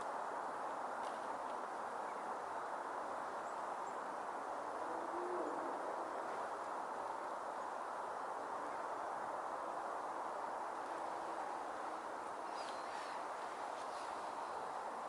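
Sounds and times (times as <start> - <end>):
low hoot-like call: 4.8 - 6.1.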